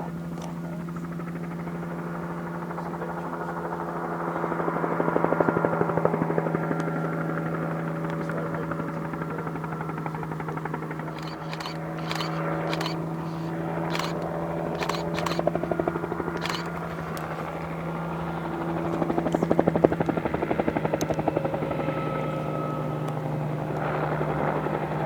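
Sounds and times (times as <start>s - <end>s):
helicopter rotor chop: 0.0s - 22.2s
sharp clicks: 11.2s - 17.6s.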